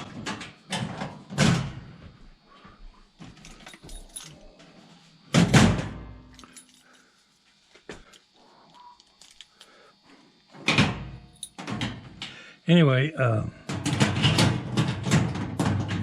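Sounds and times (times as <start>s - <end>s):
lock clicks and rattles: 13.7s - 16.0s.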